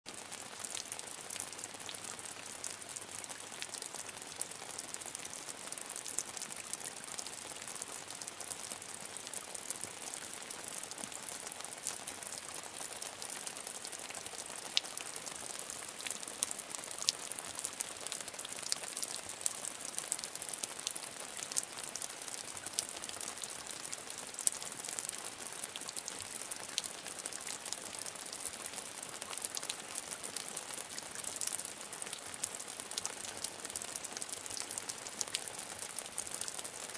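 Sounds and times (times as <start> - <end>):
raindrops ticking on hard surface: 0.1 - 36.9.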